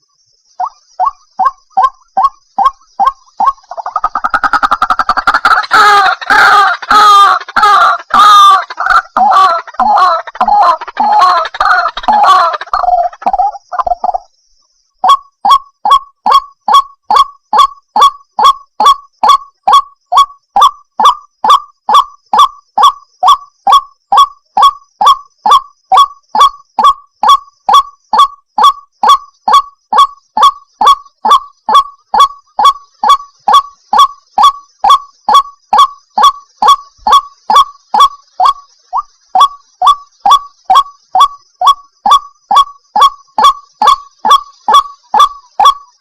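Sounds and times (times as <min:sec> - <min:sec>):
waterhen honking calls: 0:03.4 - 0:13.9, 0:42.5 - 0:45.8.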